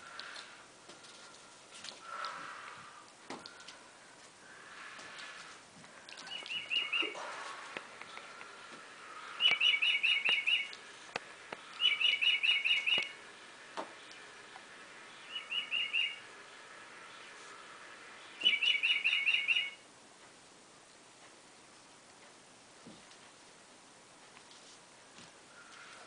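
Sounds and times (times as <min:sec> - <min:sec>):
animal high chirps: 0:06.2 - 0:07.2, 0:11.8 - 0:13.2, 0:18.4 - 0:19.8.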